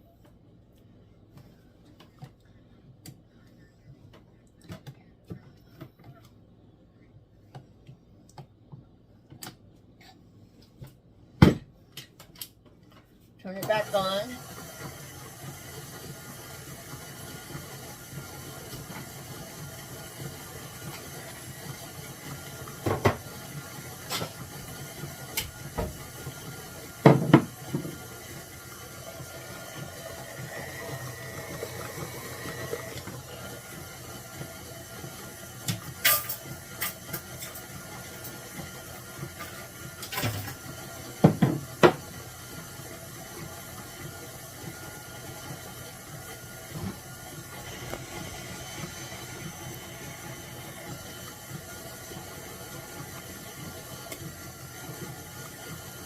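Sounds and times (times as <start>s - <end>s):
electric mixer running: 13.7s - 56.0s.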